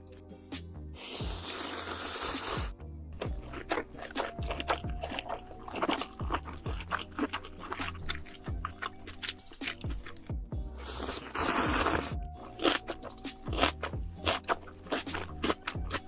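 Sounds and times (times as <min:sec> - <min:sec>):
background music with low beat: 0:00.0 - 0:16.0
crunchy chewing of food: 0:01.0 - 0:16.0.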